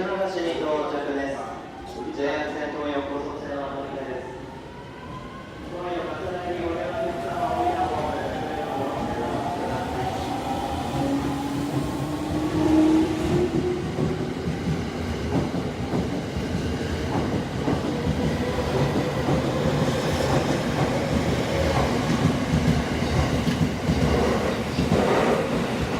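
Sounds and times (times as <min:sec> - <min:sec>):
train wheels clacking over rail joints: 0:12.8 - 0:25.9.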